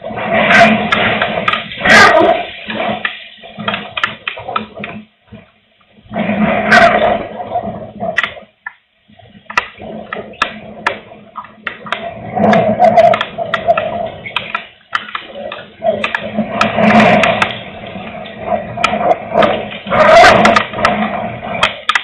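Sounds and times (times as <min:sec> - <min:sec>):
raindrops ticking: 0:00.0 - 0:06.0, 0:06.7 - 0:22.0
strong wind gusting on microphone: 0:09.8 - 0:21.9.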